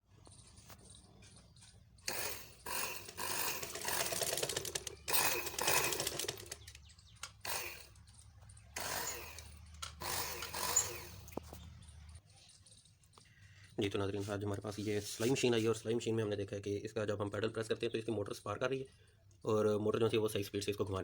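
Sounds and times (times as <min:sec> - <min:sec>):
sewing machine motor whirring: 0:02.0 - 0:11.6.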